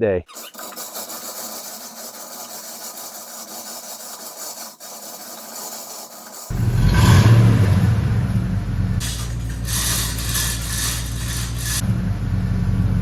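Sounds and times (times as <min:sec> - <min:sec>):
low engine rumble: 0:06.5 - 0:13.0.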